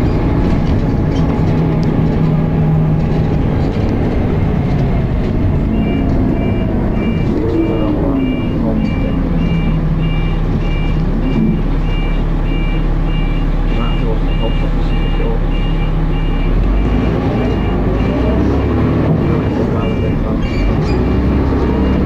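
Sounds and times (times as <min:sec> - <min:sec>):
bus engine running: 0:00.0 - 0:22.0
high two-tone electronic beep: 0:05.7 - 0:22.0.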